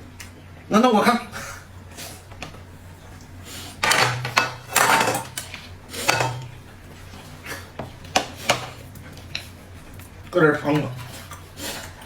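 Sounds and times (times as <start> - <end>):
utensils scraping against dishes: 3.4 - 12.0.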